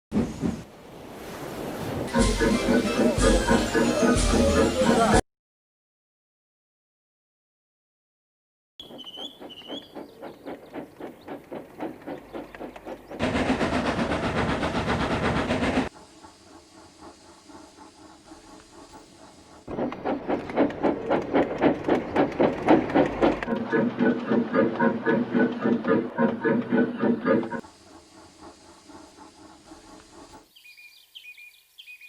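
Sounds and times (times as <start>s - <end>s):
steam locomotive chuffing: 0.1s - 0.8s, 1.7s - 5.2s, 8.8s - 30.6s
high bird chirps: 8.8s - 11.3s.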